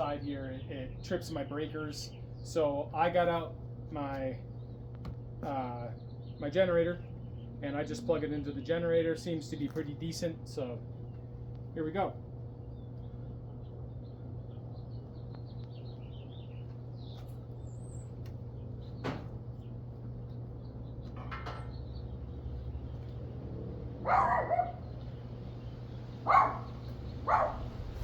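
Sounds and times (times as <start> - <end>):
generator engine humming: 0.0 - 28.0
dog barking: 24.0 - 24.9, 26.2 - 27.8.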